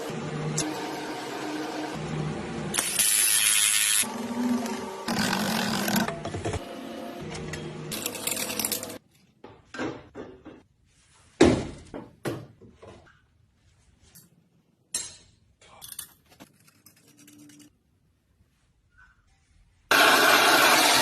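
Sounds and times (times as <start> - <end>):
clanks and knocks of hard objects: 9.4 - 10.7.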